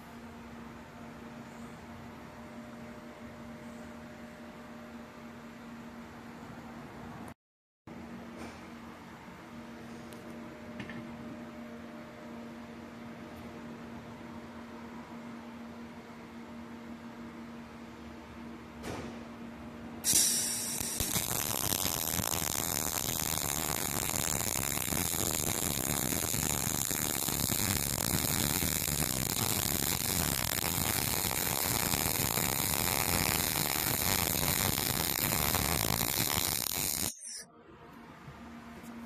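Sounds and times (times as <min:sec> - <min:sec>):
welding arc crackling: 0:20.0 - 0:37.4.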